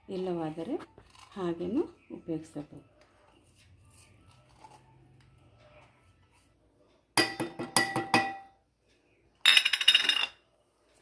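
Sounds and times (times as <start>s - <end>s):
faint room noise: 0.0s - 11.0s
metal utensil clinking on pot: 7.2s - 8.5s.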